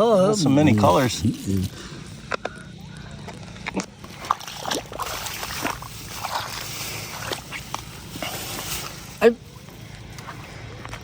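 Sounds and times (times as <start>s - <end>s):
shallow water splashing: 4.1s - 9.2s.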